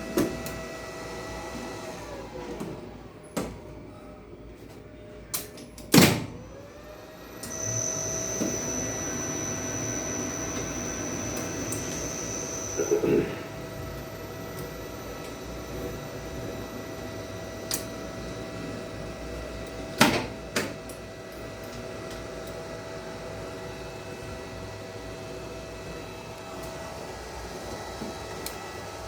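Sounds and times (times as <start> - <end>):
lift machinery hum: 6.3 - 29.0
constant whining tone: 6.5 - 19.8.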